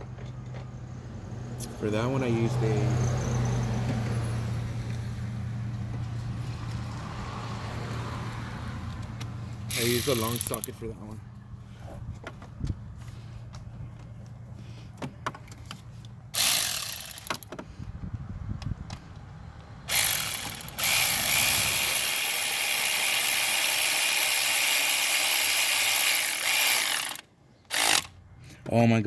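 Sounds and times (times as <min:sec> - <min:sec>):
power tool spinning socket: 0:09.7 - 0:10.8, 0:16.4 - 0:17.5, 0:19.9 - 0:28.2.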